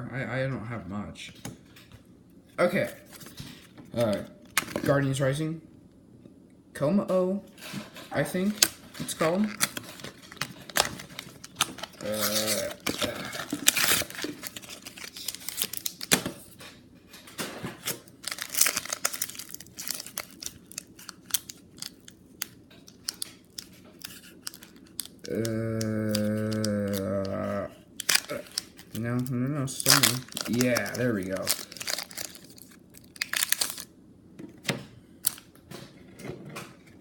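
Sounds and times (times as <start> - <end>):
steady low hum: 0.0 - 37.0
foil wrapper tearing and crinkling: 8.5 - 16.5, 17.8 - 27.4, 28.0 - 33.9.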